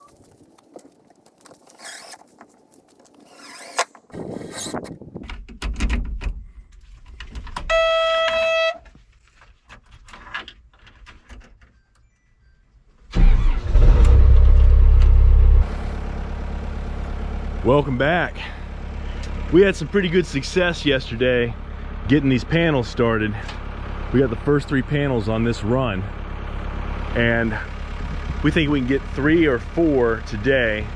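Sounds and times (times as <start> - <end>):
engine low rumble: 13.0 - 30.9.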